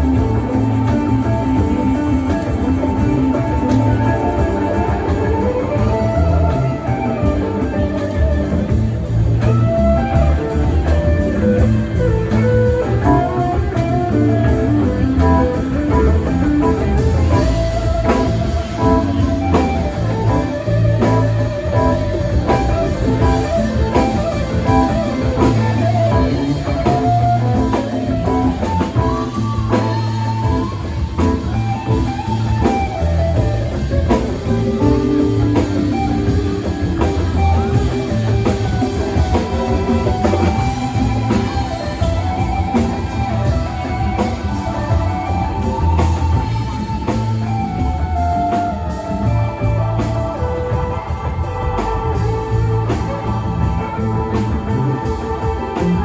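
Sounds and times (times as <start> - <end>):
bass guitar: 0.0 - 56.0
drum kit: 0.0 - 56.0
guitar lines: 0.0 - 56.0.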